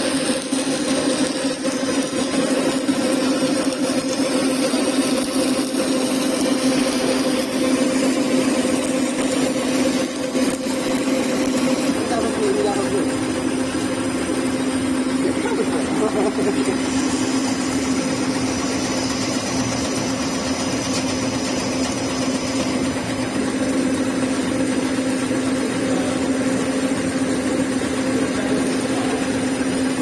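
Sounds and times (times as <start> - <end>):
food compressor motor hum: 0.0 - 30.0.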